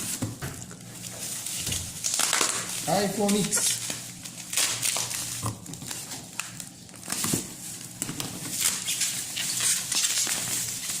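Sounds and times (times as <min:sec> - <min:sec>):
packaging rustling and clicking: 0:00.1 - 0:11.0.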